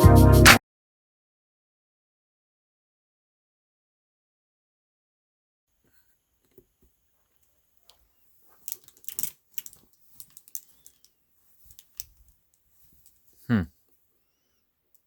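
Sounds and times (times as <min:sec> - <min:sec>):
clicks and light knocks: 0:08.6 - 0:11.1.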